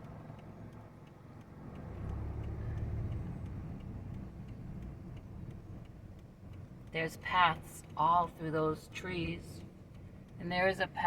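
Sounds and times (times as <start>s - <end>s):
car driving past: 1.6s - 4.1s.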